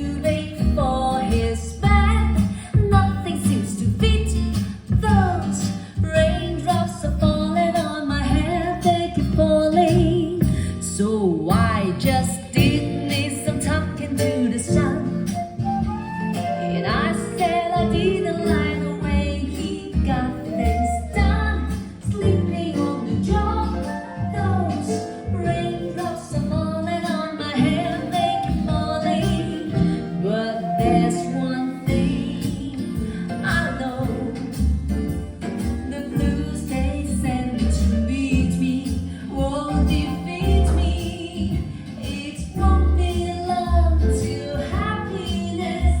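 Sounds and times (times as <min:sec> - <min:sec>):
deep held bass notes: 0:11.5 - 0:27.0
song with singing: 0:11.5 - 0:34.8, 0:35.8 - 0:46.0.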